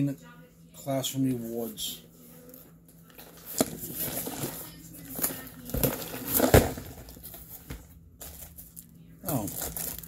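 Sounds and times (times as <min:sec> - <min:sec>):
package wrapping rustling: 0:03.0 - 0:10.0.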